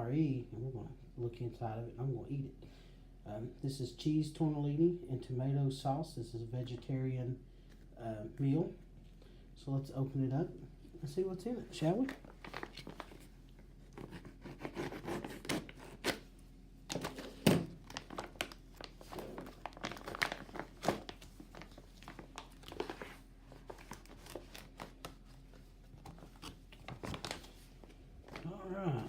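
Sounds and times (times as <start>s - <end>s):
plastic packets crinkling and tearing: 11.9s - 14.1s, 16.9s - 28.6s.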